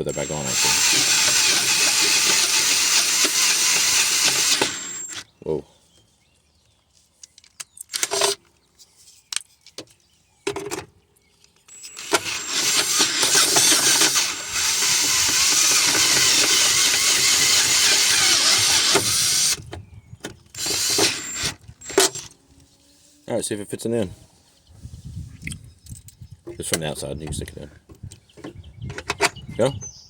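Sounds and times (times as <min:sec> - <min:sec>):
power drill boring a hole: 0:00.0 - 0:05.2, 0:11.7 - 0:19.6, 0:20.5 - 0:22.3
knocks and handling noises: 0:06.7 - 0:11.7.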